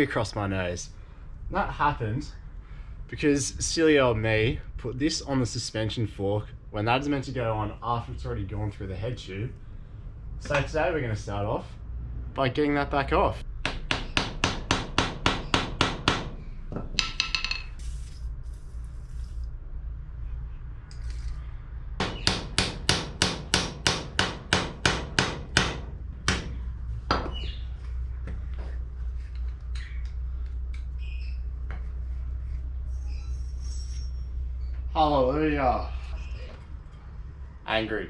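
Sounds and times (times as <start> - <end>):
hammer tapping metal: 13.6 - 17.8, 22.0 - 27.3.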